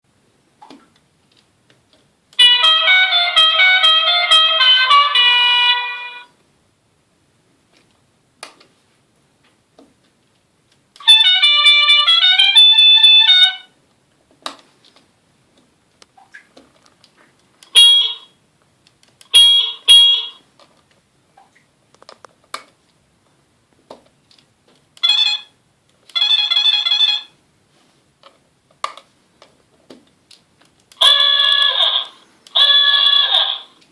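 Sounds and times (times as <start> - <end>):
electronic horn honks: 2.4 - 6.3, 11.0 - 13.7, 17.8 - 18.3, 19.3 - 20.4, 31.0 - 33.8
electronic horn tune: 2.4 - 6.3, 11.0 - 13.7, 17.8 - 18.3, 19.3 - 20.4, 31.0 - 33.8.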